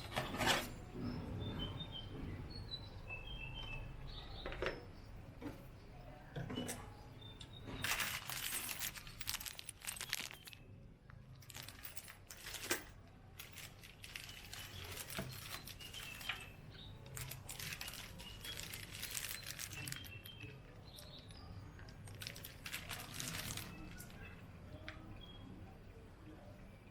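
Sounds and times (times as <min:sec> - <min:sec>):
packaging crinkling and rustling: 0:07.8 - 0:10.6, 0:11.4 - 0:24.3.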